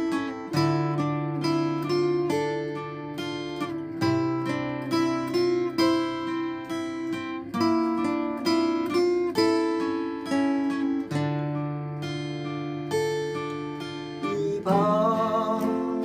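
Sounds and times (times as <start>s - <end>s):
acoustic guitar picking: 0.0s - 16.0s.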